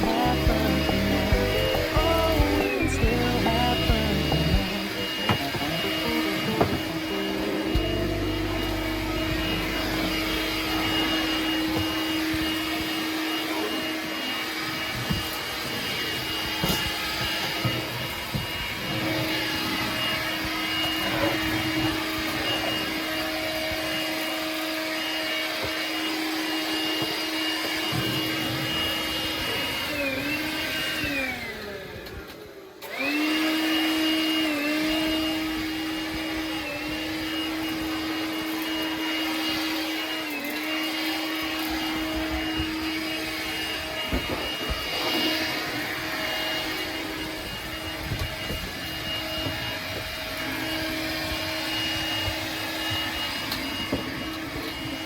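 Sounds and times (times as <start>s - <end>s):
rushing noise: 0.0s - 13.4s
small electric motor whining: 0.0s - 55.0s.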